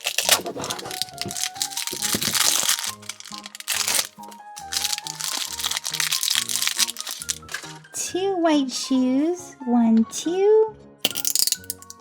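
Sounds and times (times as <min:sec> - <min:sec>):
plastic wrapping crinkling: 0:00.0 - 0:07.8.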